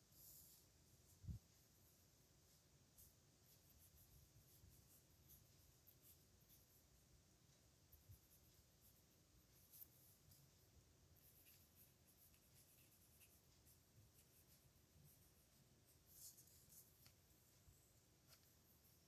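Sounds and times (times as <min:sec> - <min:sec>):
pen nib scratching on paper: 0:03.0 - 0:06.9, 0:07.9 - 0:17.3.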